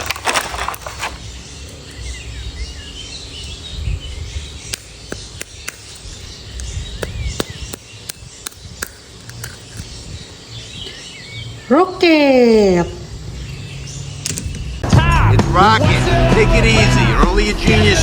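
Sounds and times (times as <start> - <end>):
small birds chirping: 0.0 - 14.8
steady low rumble: 1.3 - 11.7
sharp clicks: 4.7 - 10.0.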